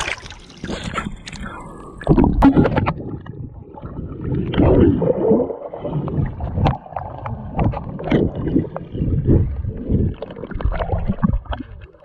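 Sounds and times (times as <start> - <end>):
water sloshing and splashing: 0.0 - 12.0.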